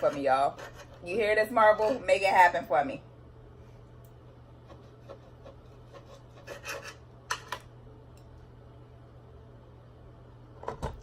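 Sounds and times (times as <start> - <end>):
utensils scraping a plate: 0.0 - 2.1, 4.6 - 7.6
steady low hum: 0.0 - 11.0.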